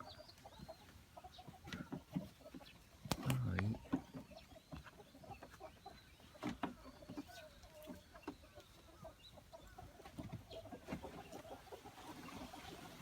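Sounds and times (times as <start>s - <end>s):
faint fowl clucking: 0.0s - 13.0s.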